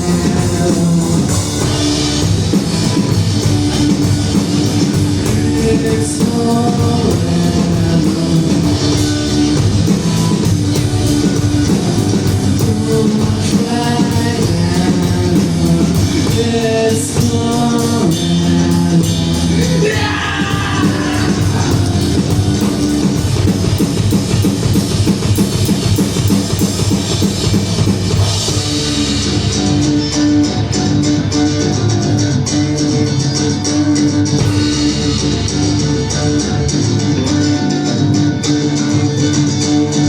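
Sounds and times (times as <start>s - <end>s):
person singing: 0.0s - 1.7s, 5.2s - 9.1s, 12.5s - 22.3s
drum kit: 0.0s - 40.0s
guitar: 0.0s - 40.0s.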